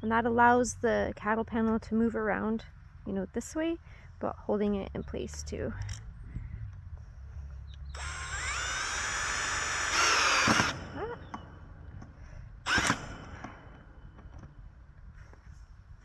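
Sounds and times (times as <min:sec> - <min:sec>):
power drill driving a screw: 0:07.7 - 0:14.7.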